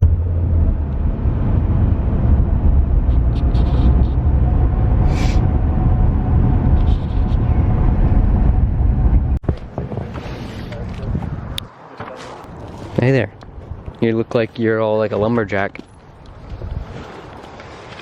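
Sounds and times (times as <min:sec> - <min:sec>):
car cabin rumble: 0:00.0 - 0:09.7.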